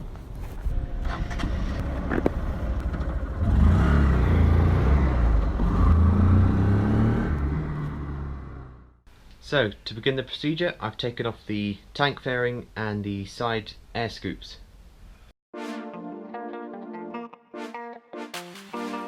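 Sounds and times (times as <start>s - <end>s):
motorcycle engine revving: 1.0s - 9.0s.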